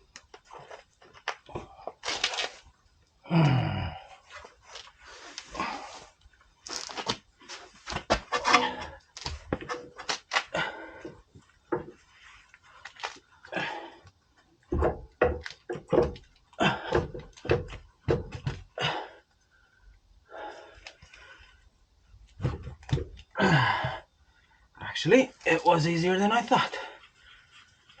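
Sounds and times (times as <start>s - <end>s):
metal knocks and thunks: 14.7s - 18.7s.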